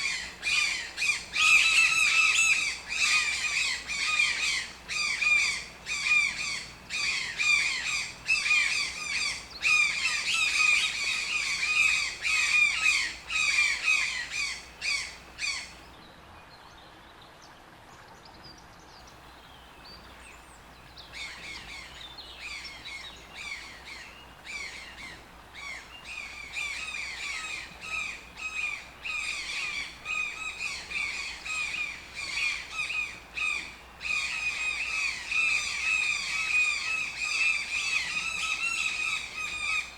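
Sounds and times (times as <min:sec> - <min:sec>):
toucan croaking squawks: 0:00.0 - 0:15.7, 0:21.2 - 0:39.9.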